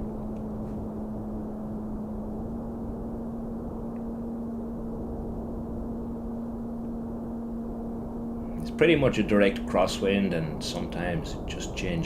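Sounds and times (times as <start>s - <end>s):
model plane motor and propeller hum: 0.0s - 12.0s
wind rumble on microphone: 0.0s - 12.0s.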